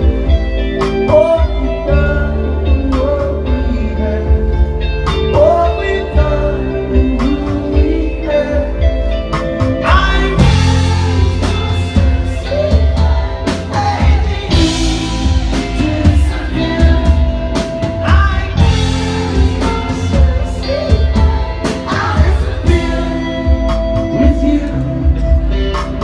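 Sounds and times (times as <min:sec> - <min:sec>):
live rock band: 0:00.0 - 0:26.0
person singing: 0:00.0 - 0:26.0
drums hitting: 0:09.4 - 0:24.4.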